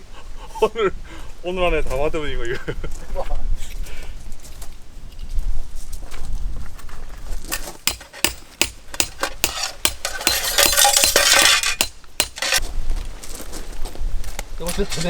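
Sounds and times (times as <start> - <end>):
metal scraping rub: 7.9 - 12.6
metal camping gear clinking: 7.9 - 12.7.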